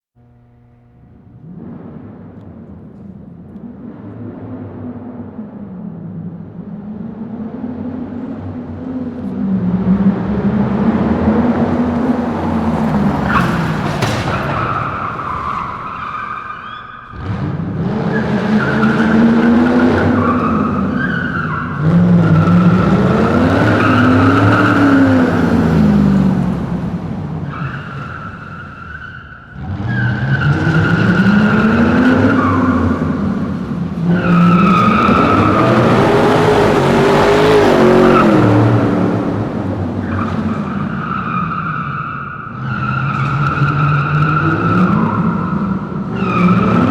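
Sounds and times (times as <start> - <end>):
car engine revving: 0.0 - 46.9
tyres squealing: 12.5 - 17.3.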